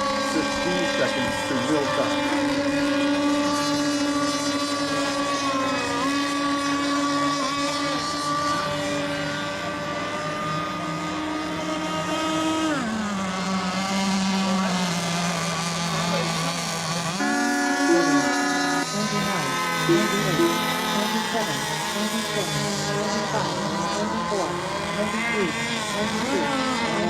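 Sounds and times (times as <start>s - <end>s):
model boat engines running: 0.0s - 27.0s.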